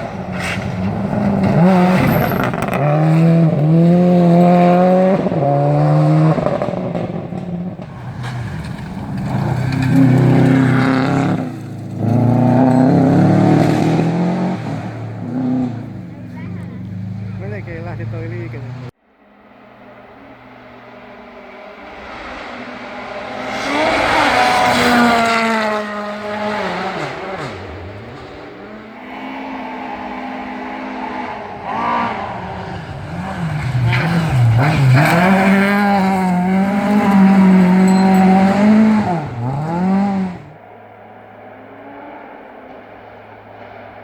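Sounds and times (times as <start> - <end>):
rally car engine revving: 0.0 - 18.9, 20.4 - 40.7
tyres on gravel: 7.2 - 13.7, 32.2 - 40.4.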